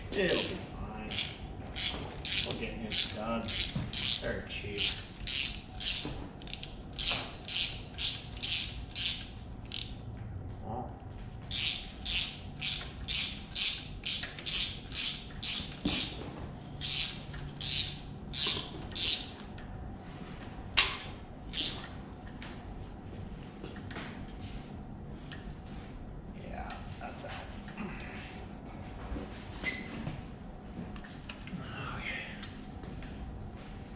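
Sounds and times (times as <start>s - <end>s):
ratchet wrench clicking: 0.3s - 10.0s, 11.5s - 16.2s, 16.8s - 19.4s, 21.5s - 21.9s.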